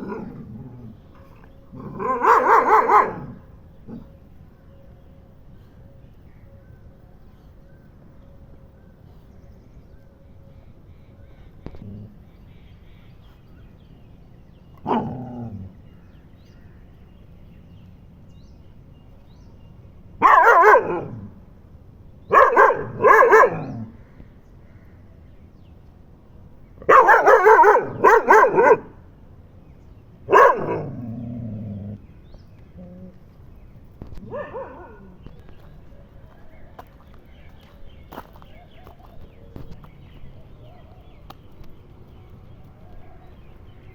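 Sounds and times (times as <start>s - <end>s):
dog barking: 1.8s - 3.4s, 20.2s - 21.2s, 22.3s - 23.8s, 26.9s - 29.0s, 30.3s - 31.0s, 34.2s - 35.1s.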